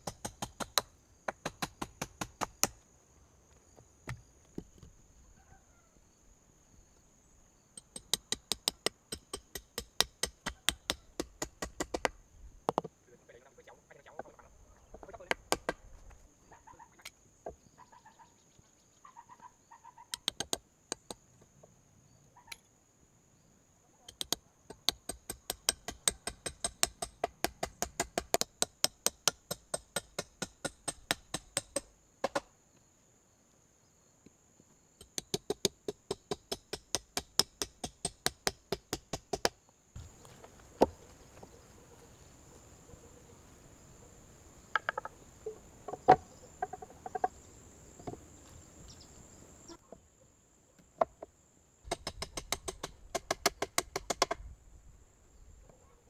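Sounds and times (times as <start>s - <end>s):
insect trill: 12.1s - 55.6s.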